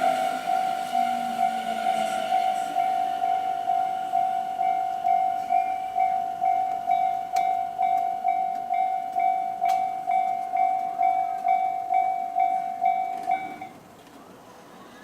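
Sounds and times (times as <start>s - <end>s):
level crossing warning bell: 0.0s - 13.8s.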